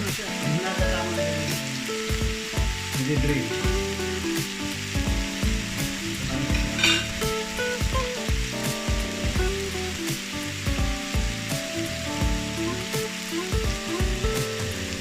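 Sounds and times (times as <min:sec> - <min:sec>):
background music with beat: 0:00.0 - 0:15.0
meat sizzling on a grill pan: 0:00.0 - 0:15.0
scrape on grill pan: 0:06.6 - 0:07.2.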